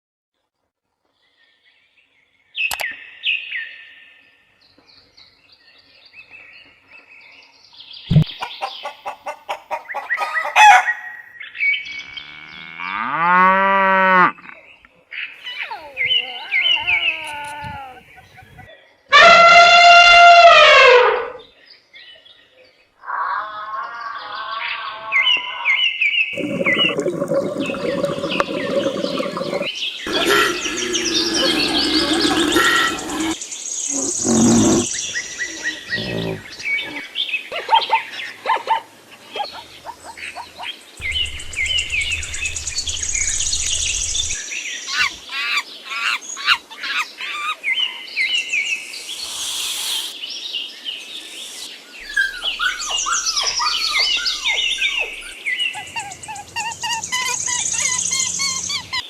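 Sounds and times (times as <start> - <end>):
animal sounds: 15.4 - 20.3, 26.4 - 47.6, 51.2 - 59.0
bird chirps and tweets: 39.4 - 45.2, 46.4 - 59.0.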